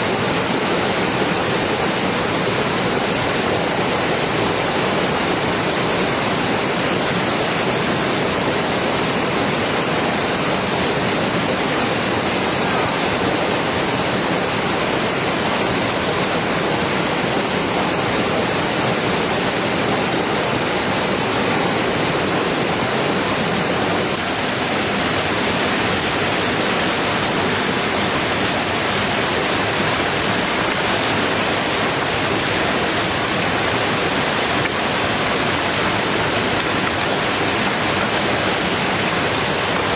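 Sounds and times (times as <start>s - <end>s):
heavy rain falling: 0.0s - 39.9s.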